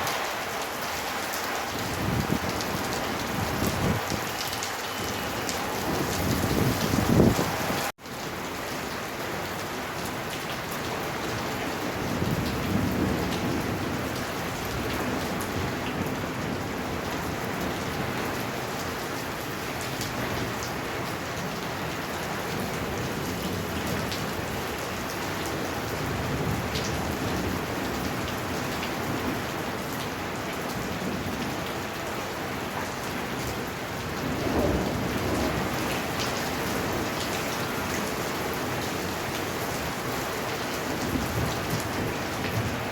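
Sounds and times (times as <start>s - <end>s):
heavy rain pouring: 0.0s - 42.9s
low rumble of thunder: 1.8s - 4.1s, 34.2s - 36.2s.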